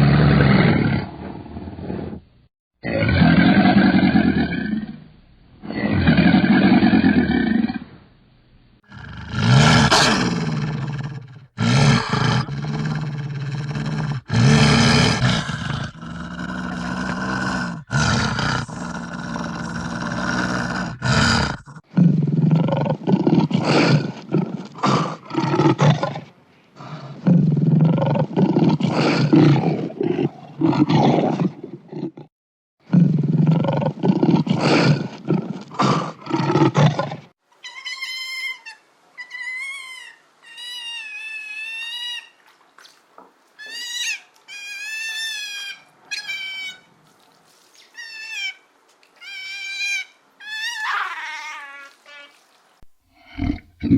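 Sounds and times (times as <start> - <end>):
large predator roaring: 0.0 - 2.2, 2.8 - 5.0, 5.6 - 7.9, 8.9 - 32.3, 32.9 - 37.3, 53.2 - 53.9
deep roaring growls: 0.0 - 5.0, 8.9 - 37.3, 53.2 - 53.9.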